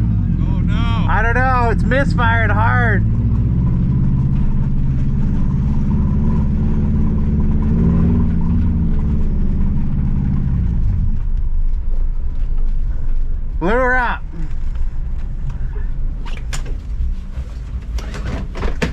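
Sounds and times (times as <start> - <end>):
car engine misfiring: 14.3 - 18.9.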